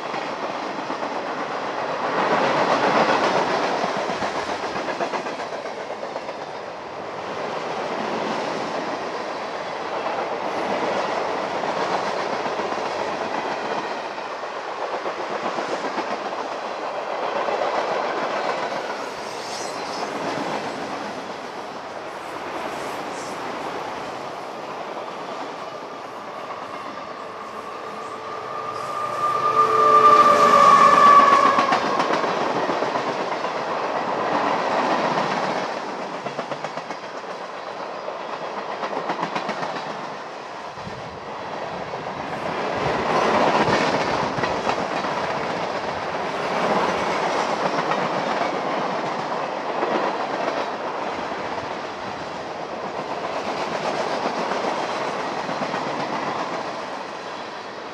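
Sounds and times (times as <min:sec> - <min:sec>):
held multi-pitch tone: 0:25.8 - 0:32.4.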